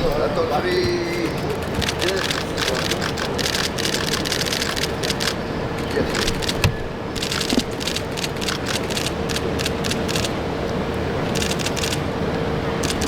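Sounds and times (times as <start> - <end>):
background hum: 0.0 - 13.0
camera shutter clicking: 1.1 - 6.6, 7.2 - 10.4, 11.4 - 12.0.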